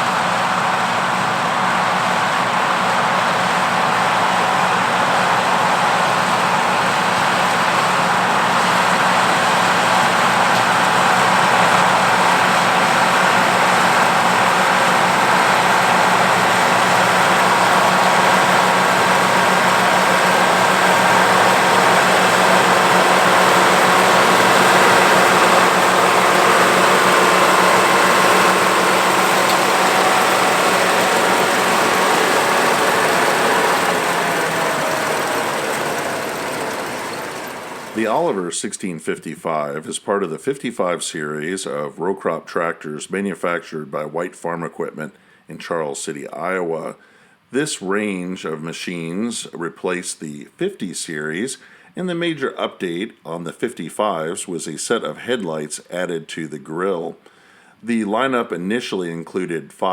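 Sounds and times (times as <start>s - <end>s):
tractor and corn picker drone: 0.0s - 38.4s.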